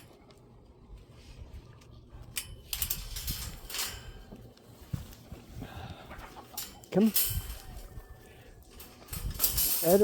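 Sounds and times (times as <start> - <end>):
metal clinking and rattling: 2.4 - 4.5, 6.5 - 10.0.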